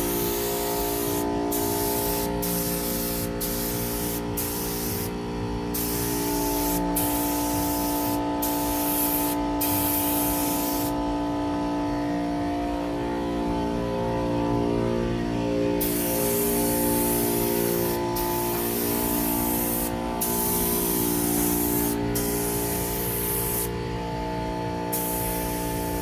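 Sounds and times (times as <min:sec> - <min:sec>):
paint spray gun hissing: 0:00.0 - 0:05.1, 0:05.7 - 0:11.0, 0:15.8 - 0:23.7, 0:24.9 - 0:26.0.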